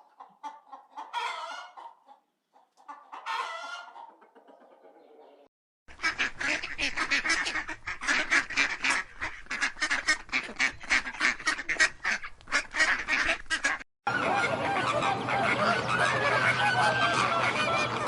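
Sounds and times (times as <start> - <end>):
birds calling rapidly: 5.9 - 18.0
flock of birds calling: 6.1 - 18.0.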